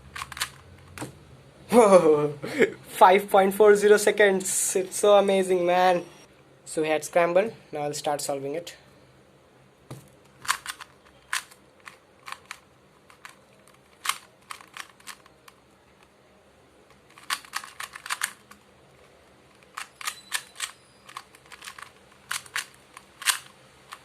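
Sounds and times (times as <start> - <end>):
puzzle cube plastic clicks: 0.1 - 1.1, 10.0 - 16.1, 16.8 - 24.0.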